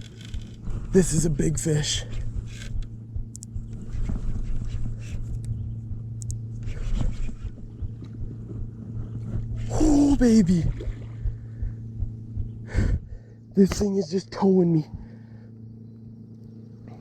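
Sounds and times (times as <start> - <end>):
water and wind rumble: 0.0 - 15.5
water splashes: 8.0 - 11.4.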